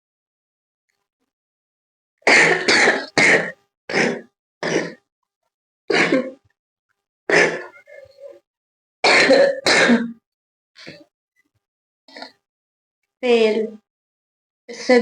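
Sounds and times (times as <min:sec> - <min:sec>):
woman coughing: 0:02.3 - 0:05.0, 0:05.9 - 0:06.4, 0:07.3 - 0:08.0, 0:09.0 - 0:10.2.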